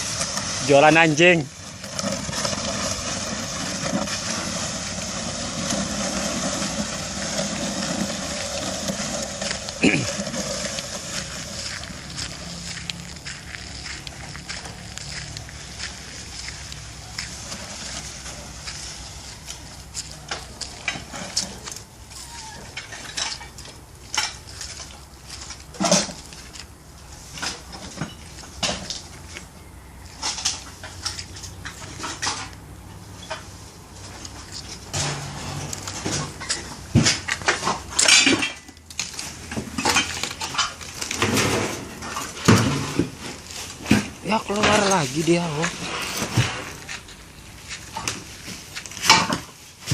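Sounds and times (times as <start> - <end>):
objects clicking and knocking: 34.1 - 47.2.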